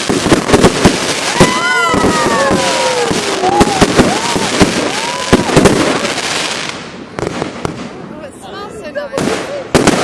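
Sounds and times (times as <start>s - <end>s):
whistling fireworks: 0.0s - 8.0s
fireworks bangs: 0.0s - 10.0s
fireworks crackling: 0.0s - 10.0s.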